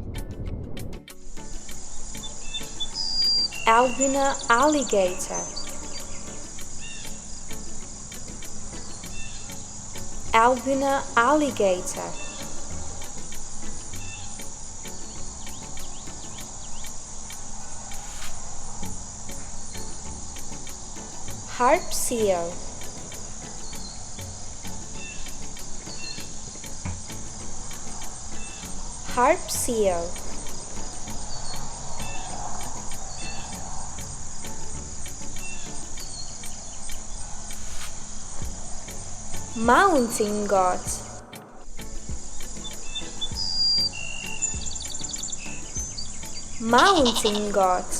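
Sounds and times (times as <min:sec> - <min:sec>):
faint ticking: 0:00.0 - 0:47.9
steady high-pitched buzz: 0:00.0 - 0:47.9
insect chorus: 0:00.9 - 0:47.9
seal high chirps: 0:01.6 - 0:26.8, 0:42.4 - 0:47.9.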